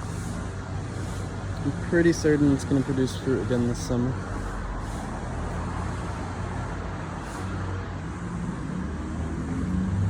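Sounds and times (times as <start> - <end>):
low mechanical hum and rumble: 0.0 - 10.0.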